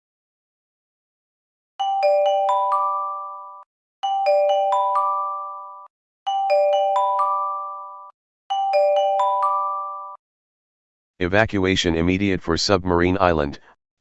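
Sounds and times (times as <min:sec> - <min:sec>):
bell-like alert chime: 0:01.8 - 0:10.2.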